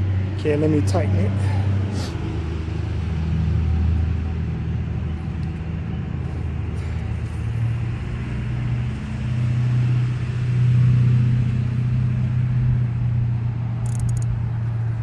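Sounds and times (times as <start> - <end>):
vehicle engine humming: 13.7 - 14.5.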